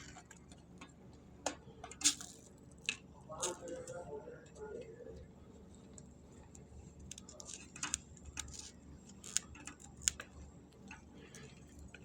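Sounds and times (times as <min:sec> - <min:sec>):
crackling pops in a pan: 0:00.0 - 0:03.8, 0:07.1 - 0:12.0.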